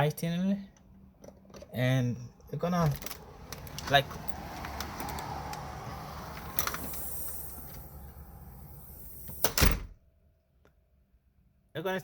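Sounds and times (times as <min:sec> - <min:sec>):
door closer hissing: 0:04.1 - 0:10.0
door latching with a thunk: 0:09.3 - 0:10.0.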